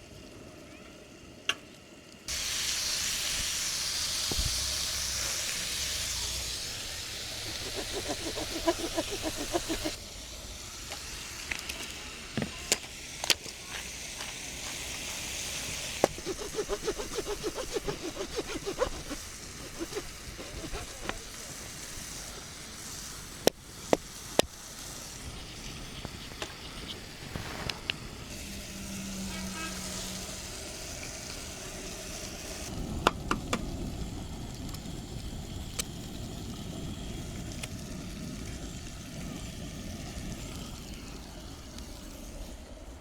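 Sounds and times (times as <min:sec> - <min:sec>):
food sizzling in a frying pan: 0:02.3 - 0:07.4.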